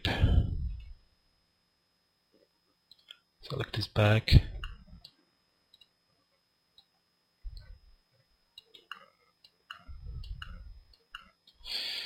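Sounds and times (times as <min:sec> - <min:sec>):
faint low rumble: 0:00.0 - 0:01.1, 0:07.4 - 0:08.3, 0:09.1 - 0:11.4
computer mouse clicking: 0:08.6 - 0:11.6.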